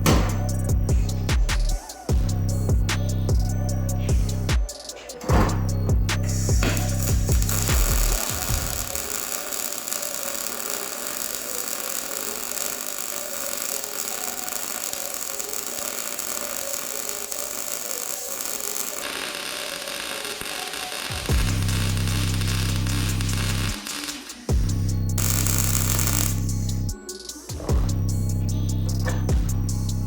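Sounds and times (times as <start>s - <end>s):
welder arc crackling: 6.1s - 27.0s.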